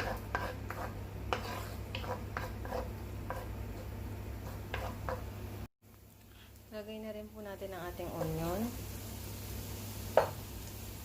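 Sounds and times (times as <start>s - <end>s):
utensil tapping and scraping pan: 0.0s - 5.3s, 10.1s - 10.4s.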